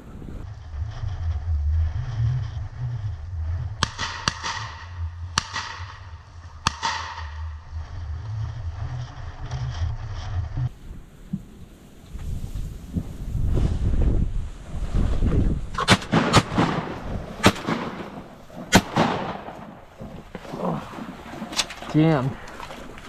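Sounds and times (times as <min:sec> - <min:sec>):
wind rumble on microphone: 0:00.0 - 0:23.0
shotgun shots: 0:03.8 - 0:07.5, 0:15.8 - 0:19.9.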